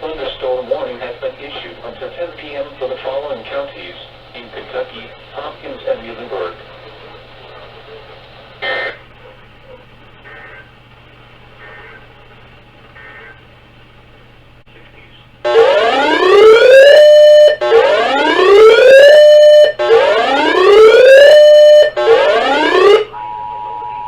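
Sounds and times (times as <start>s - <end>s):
low steady hum: 12.2s - 24.0s
siren-style alert tone: 15.5s - 23.9s.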